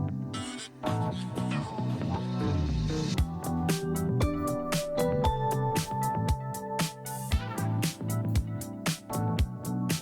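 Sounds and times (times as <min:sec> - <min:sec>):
upbeat music with drum beat: 0:02.6 - 0:10.0.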